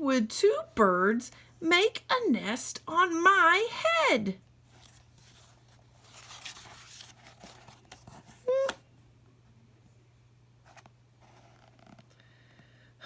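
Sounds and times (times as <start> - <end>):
paper page turning: 4.8 - 8.8
short voiced sound: 8.4 - 8.8.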